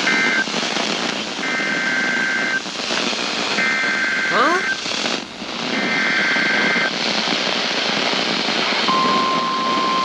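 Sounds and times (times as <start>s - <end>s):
steady warning alarm tone: 0.0s - 0.5s, 1.4s - 2.8s, 3.4s - 5.0s, 5.7s - 6.9s, 8.9s - 10.0s
radio hiss: 0.0s - 9.8s.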